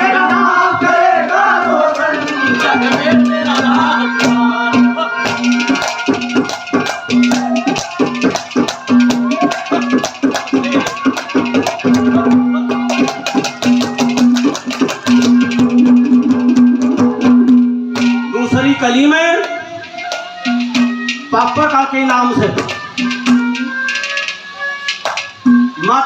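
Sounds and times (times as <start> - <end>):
fast even drumming: 0.0 - 26.0
held drone note: 0.0 - 26.0
rattling percussion: 1.6 - 26.0
melody line: 19.5 - 26.0.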